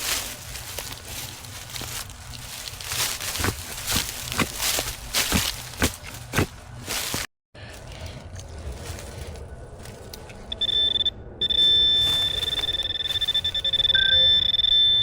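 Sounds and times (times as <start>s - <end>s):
metal detector alert tone: 10.5s - 15.0s.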